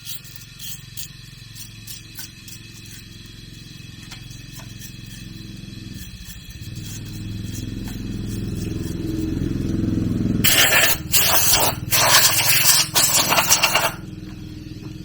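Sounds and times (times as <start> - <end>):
small engine running: 0.0 - 15.0
loud harsh noise bursts: 10.4 - 14.0.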